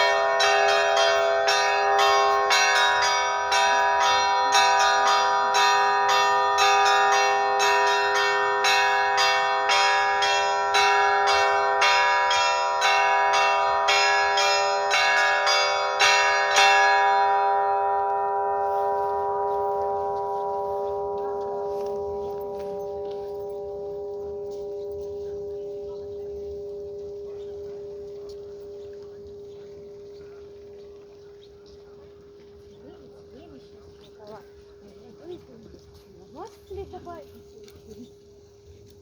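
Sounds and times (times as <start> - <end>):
church bells pealing: 0.0 - 37.4.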